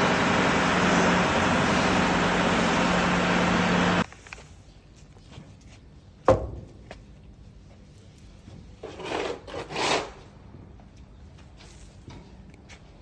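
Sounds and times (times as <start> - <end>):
harvester humming: 0.0 - 4.0.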